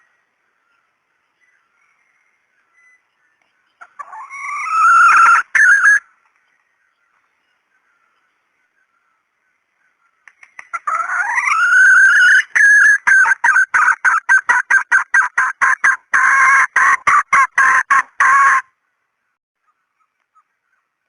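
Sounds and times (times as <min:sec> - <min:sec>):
rooster calling: 0:03.9 - 0:06.0, 0:10.8 - 0:18.7.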